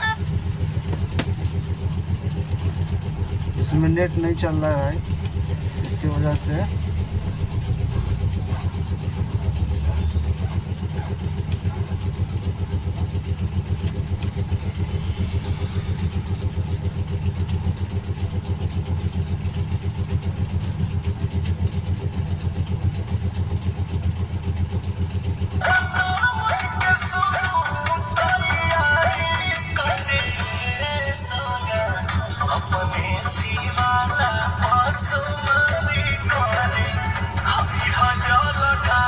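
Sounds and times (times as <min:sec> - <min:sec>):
song from phone loudspeaker: 0:00.0 - 0:00.2, 0:25.6 - 0:39.0
engine running with low pulsing: 0:00.0 - 0:39.0.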